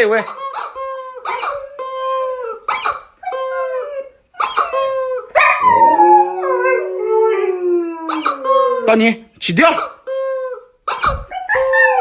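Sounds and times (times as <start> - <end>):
dog howling: 3.3 - 8.9, 11.3 - 12.0.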